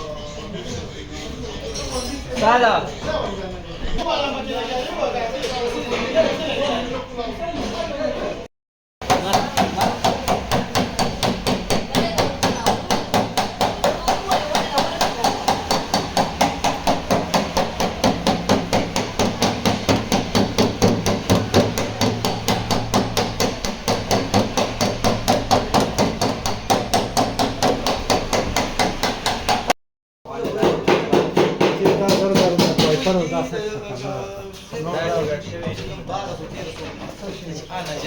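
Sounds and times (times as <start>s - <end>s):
hammer striking sheet metal: 9.0s - 29.8s.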